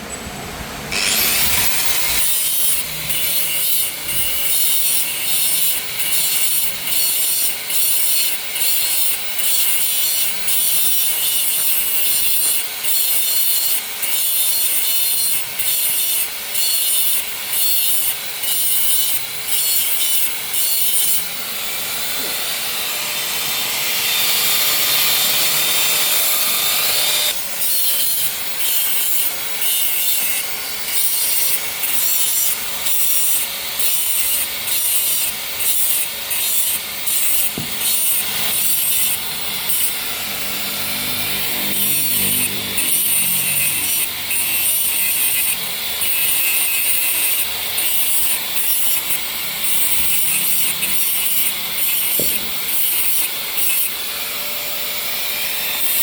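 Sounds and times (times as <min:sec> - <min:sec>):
hand tool scraping metal: 0:00.9 - 0:21.3, 0:24.1 - 0:54.0.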